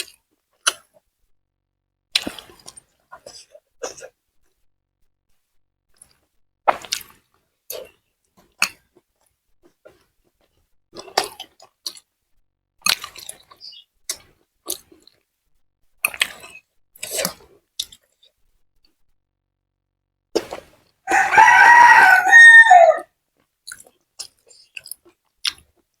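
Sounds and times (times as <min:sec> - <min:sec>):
wet chewing and biting: 0:00.0 - 0:01.0, 0:02.2 - 0:03.3, 0:05.9 - 0:10.1, 0:11.0 - 0:12.1, 0:12.8 - 0:15.2, 0:16.0 - 0:19.0, 0:23.7 - 0:25.9.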